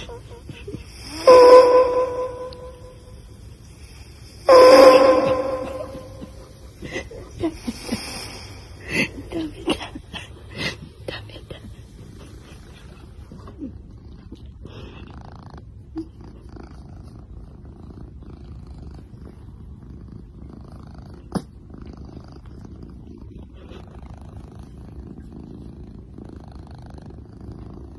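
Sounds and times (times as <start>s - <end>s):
cat snoring: 11.8s - 27.9s.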